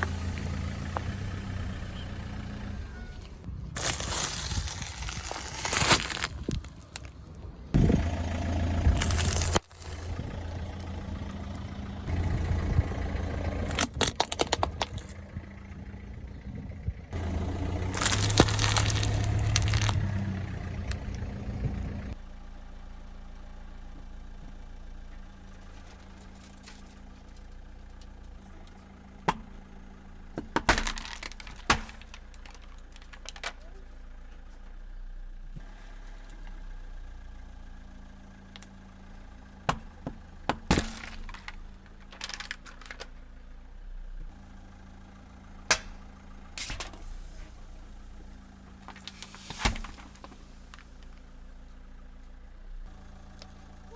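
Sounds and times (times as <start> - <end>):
car engine running: 0.0 - 53.9
tyres crushing objects: 3.8 - 7.2, 9.0 - 10.2, 13.7 - 15.2, 17.2 - 20.1, 30.4 - 33.5.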